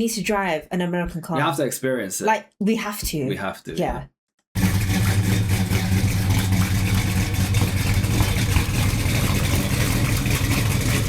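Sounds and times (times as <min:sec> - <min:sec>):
car engine idling: 0:04.6 - 0:11.0.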